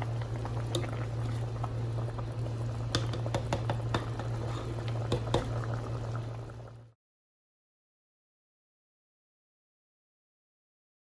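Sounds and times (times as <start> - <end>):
steady low hum: 0.0 - 6.9
pot boiling with pops: 0.0 - 7.0.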